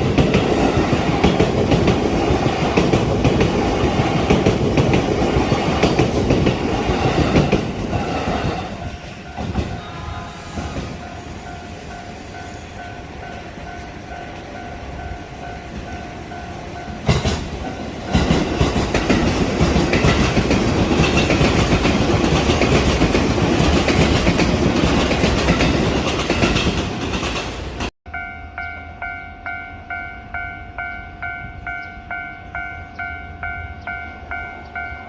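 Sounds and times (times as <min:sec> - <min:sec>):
train passing with clickety-clack: 0:00.0 - 0:35.0
level crossing warning bell: 0:11.0 - 0:18.5, 0:28.1 - 0:35.0.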